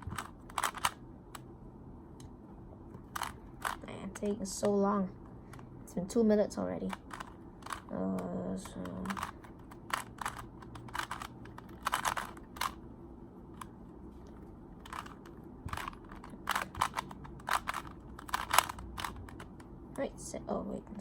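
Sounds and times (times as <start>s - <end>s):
puzzle cube plastic clicks: 0.0s - 1.4s, 3.0s - 4.8s, 6.8s - 12.8s, 14.8s - 19.7s.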